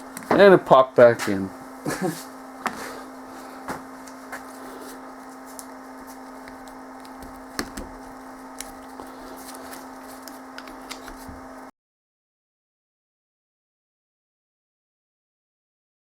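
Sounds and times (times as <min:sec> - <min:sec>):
steady hum: 0:00.0 - 0:11.7.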